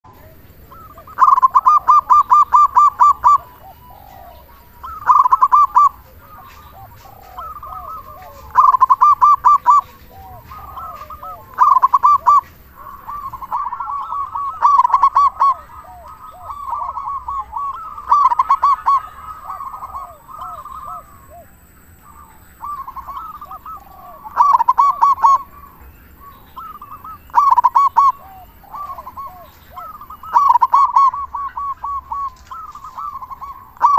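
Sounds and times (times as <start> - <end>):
dove cooing: 0.0 - 33.9.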